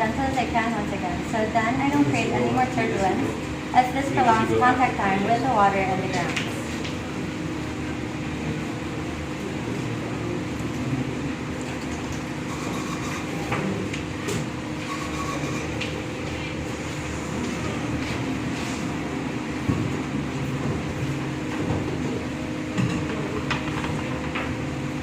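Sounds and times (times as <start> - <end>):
steady mechanical hum: 0.0 - 25.0.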